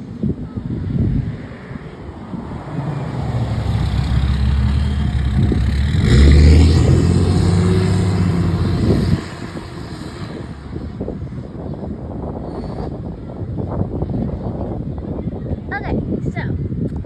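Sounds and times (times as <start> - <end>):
vehicle engine driving past: 1.2 - 11.5.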